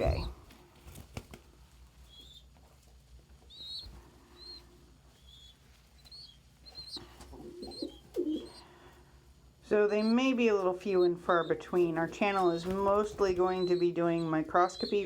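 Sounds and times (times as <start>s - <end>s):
pigeon high chirps: 2.0s - 2.6s, 3.4s - 8.8s, 9.7s - 15.0s
pigeon low coo: 6.7s - 8.7s.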